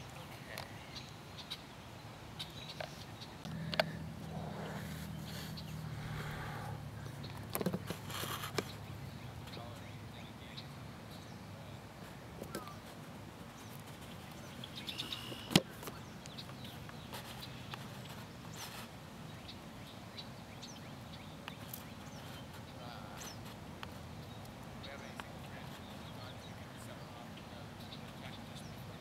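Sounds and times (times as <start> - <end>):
steady low hum: 0.0 - 17.7.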